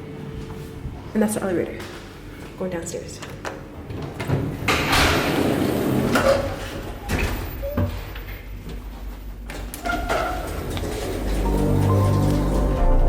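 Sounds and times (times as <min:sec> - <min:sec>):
elevator doors sliding: 0:03.8 - 0:08.4, 0:09.4 - 0:13.0.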